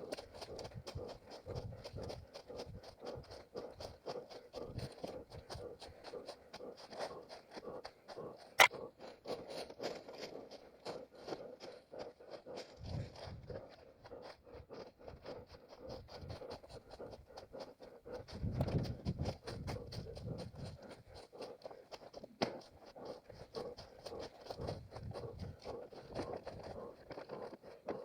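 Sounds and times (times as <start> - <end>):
person panting: 0.0 - 28.0
running footsteps on forest ground: 0.0 - 28.0.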